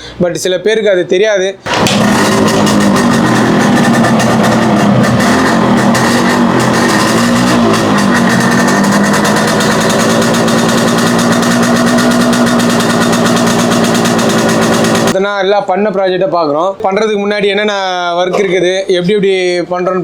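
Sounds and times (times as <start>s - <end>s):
two-stroke motorcycle engine idling: 1.7s - 15.2s.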